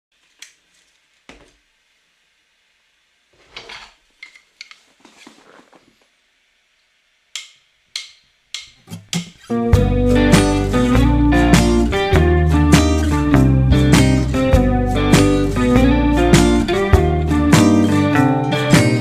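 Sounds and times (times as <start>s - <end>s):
scraping and rustling: 3.3s - 6.2s.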